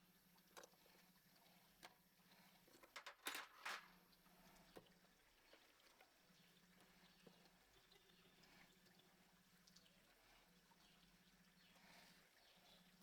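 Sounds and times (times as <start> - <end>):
small ticks: 6.8 - 11.9.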